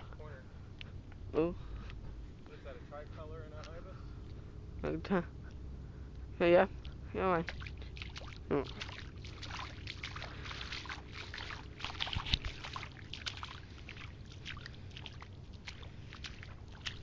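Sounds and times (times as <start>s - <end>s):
footsteps sloshing through water: 6.2s - 17.0s
water splashes: 6.7s - 17.0s.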